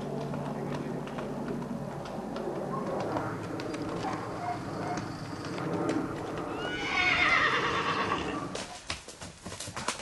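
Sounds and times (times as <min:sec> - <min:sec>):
hoofbeats: 0:00.0 - 0:10.0
horse whinnying: 0:06.5 - 0:08.5.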